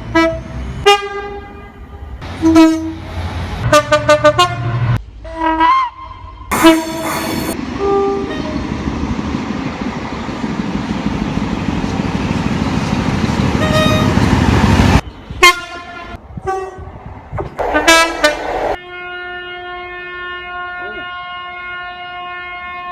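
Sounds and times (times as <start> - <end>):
train rumbling past: 0.0 - 5.3, 6.5 - 18.8
train horn: 0.1 - 3.0, 3.6 - 8.7, 13.6 - 14.4, 15.4 - 17.0, 17.6 - 22.9.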